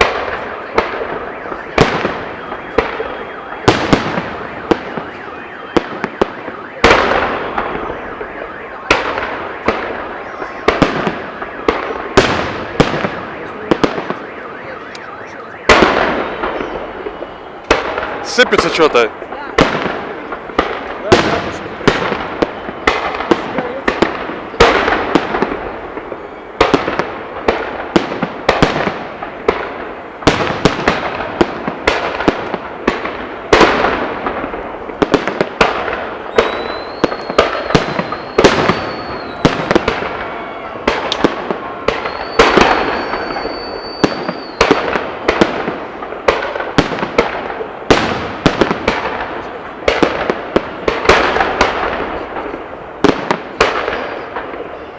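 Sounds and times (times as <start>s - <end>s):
high firework whistle: 0.0s - 18.9s, 20.0s - 27.1s, 36.0s - 45.1s
fireworks bursting with crackle: 0.0s - 54.9s.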